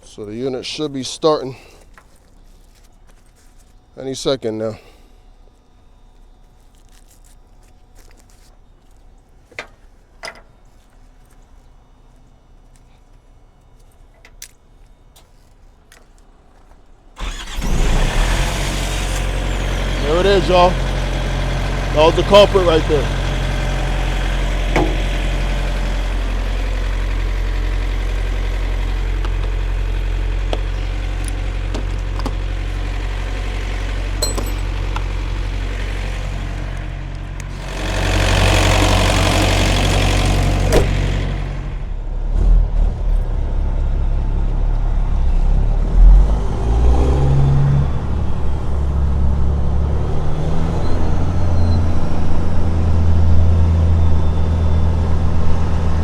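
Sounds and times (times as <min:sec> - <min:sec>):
diesel engine running: 0:16.6 - 0:56.0.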